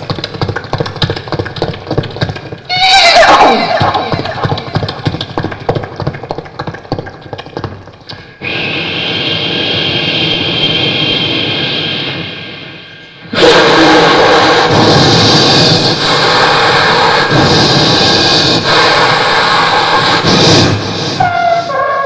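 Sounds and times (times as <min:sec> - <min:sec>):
people imitating a train with voices: 0:02.7 - 0:05.3, 0:08.2 - 0:22.0.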